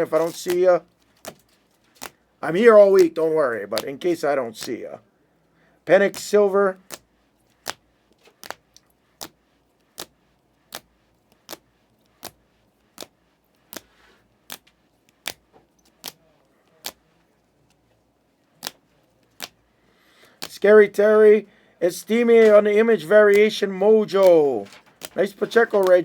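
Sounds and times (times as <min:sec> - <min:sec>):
trading cards clicking: 0:00.0 - 0:00.6, 0:01.2 - 0:02.2, 0:13.7 - 0:13.9, 0:15.2 - 0:17.0, 0:18.6 - 0:19.6, 0:23.3 - 0:26.0.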